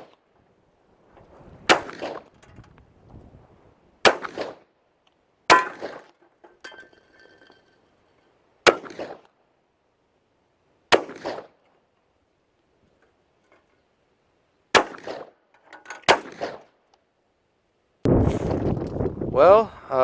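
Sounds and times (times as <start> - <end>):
faint metallic ring: 6.5 - 8.4
rifle shots echoing: 14.8 - 15.3, 16.1 - 16.6.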